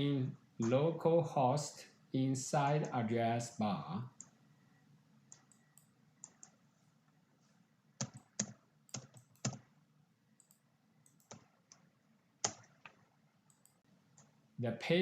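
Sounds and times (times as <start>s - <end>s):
keyboard keys clicking: 8.0s - 9.7s, 10.4s - 11.8s, 12.4s - 13.8s.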